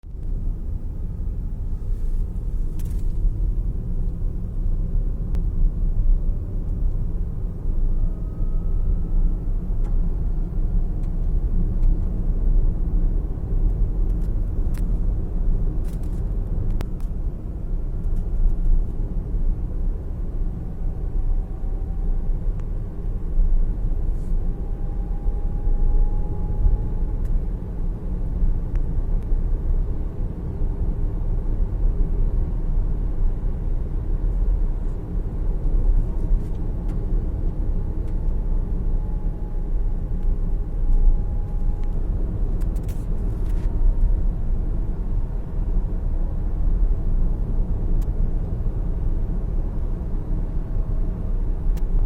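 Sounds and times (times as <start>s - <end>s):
road and tyre rumble: 0.0s - 52.0s
sharp clicks from underneath car: 40.2s - 44.1s.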